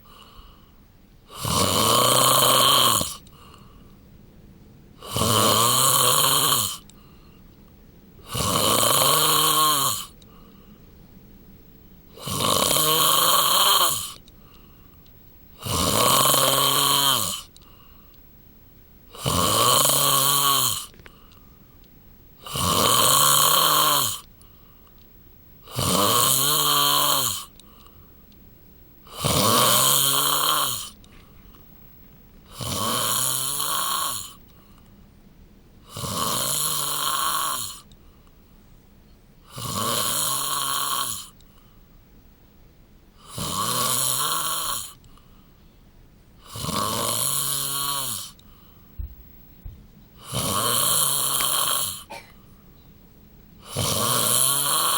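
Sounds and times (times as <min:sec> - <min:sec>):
quiet breaths: 0:00.0 - 0:54.9
man snoring: 0:01.3 - 0:03.6, 0:05.0 - 0:06.9, 0:08.2 - 0:10.2, 0:12.1 - 0:14.2, 0:15.6 - 0:17.5, 0:19.1 - 0:21.0, 0:22.4 - 0:24.3, 0:25.6 - 0:27.5, 0:29.1 - 0:31.0, 0:32.5 - 0:34.4, 0:35.9 - 0:37.9, 0:39.4 - 0:41.4, 0:43.2 - 0:45.0, 0:46.4 - 0:48.4, 0:50.2 - 0:52.3, 0:53.6 - 0:54.9.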